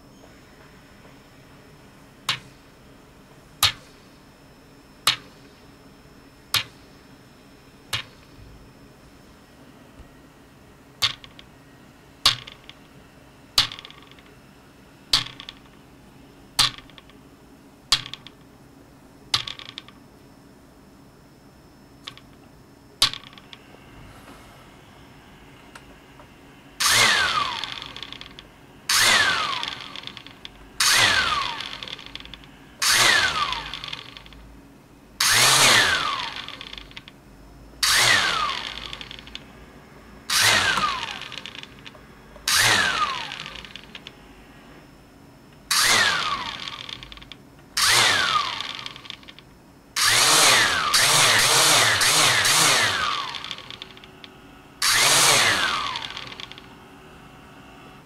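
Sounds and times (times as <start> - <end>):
drone motors whining: 25.6 - 34.4, 35.2 - 37.1, 37.8 - 39.5, 40.2 - 44.8, 45.7 - 49.4, 50.0 - 54.2, 54.8 - 58.0.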